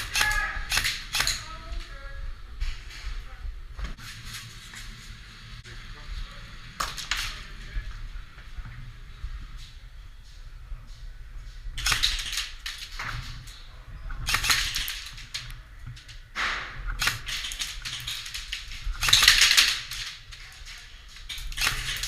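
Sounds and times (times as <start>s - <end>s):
airsoft gun firing bursts: 18.9s - 19.9s.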